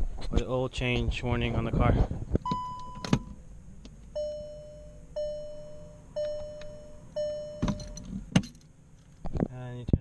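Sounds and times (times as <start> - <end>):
car warning chime: 2.4 - 3.4, 4.1 - 8.6.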